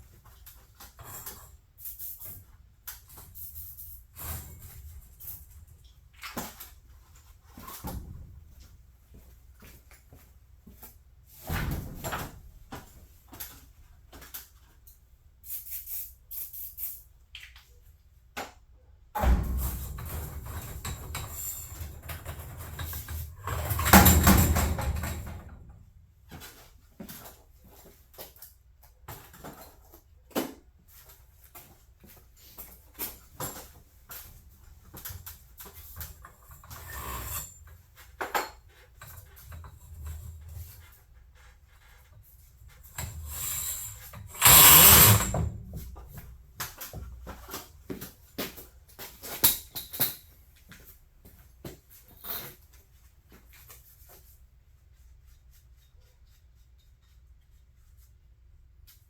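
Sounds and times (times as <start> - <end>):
knocks and clanks on garage door: 19.2 - 25.7
scraping rub: 36.2 - 45.4.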